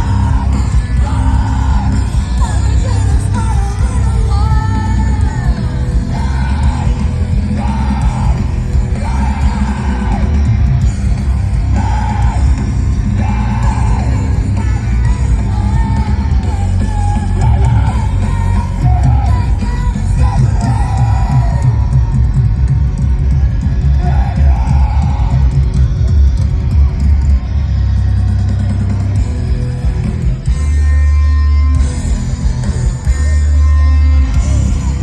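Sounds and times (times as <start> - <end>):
person singing and yelling: 0.0 - 10.6, 11.6 - 22.3, 23.9 - 25.8
rock band playing: 0.0 - 35.0.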